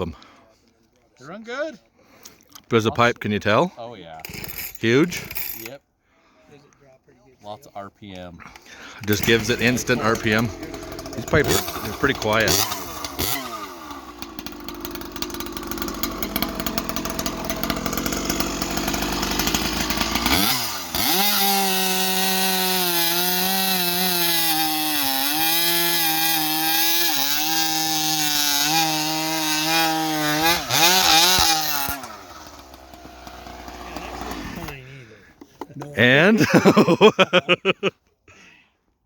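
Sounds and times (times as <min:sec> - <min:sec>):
chainsaw cutting and revving: 0:04.2 - 0:05.6, 0:08.4 - 0:34.9, 0:36.0 - 0:37.6.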